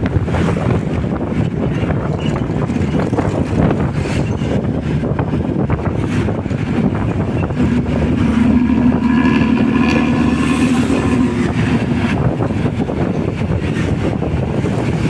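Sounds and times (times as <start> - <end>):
diesel bus engine growling: 0.0 - 15.0
steady droning tone: 5.7 - 14.3.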